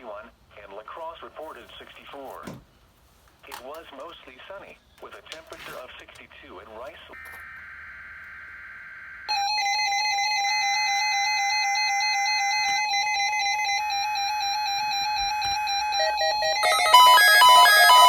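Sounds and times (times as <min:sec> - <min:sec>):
loud steady alarm tone: 0:07.2 - 0:18.0
electronic beeps stepping in pitch: 0:13.0 - 0:18.0.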